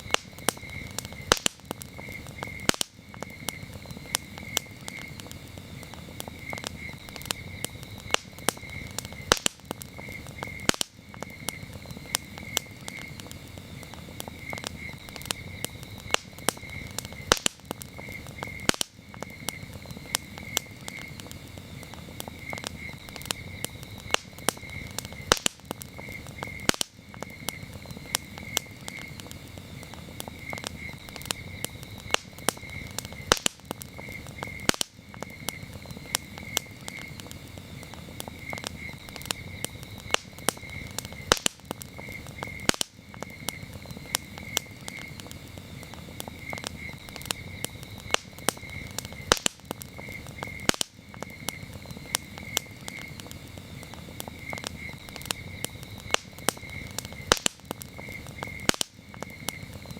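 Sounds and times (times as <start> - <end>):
campfire crackling and popping: 0.0 - 59.9
crickets chirping: 0.0 - 59.9.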